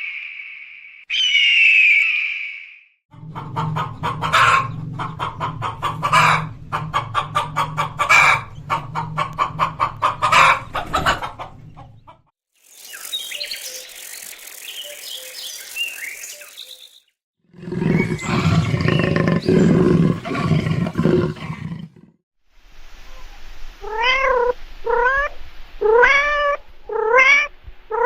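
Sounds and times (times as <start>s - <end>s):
high bird chirps: 0.0s - 2.8s, 12.6s - 17.2s
chickens clucking: 3.2s - 12.3s.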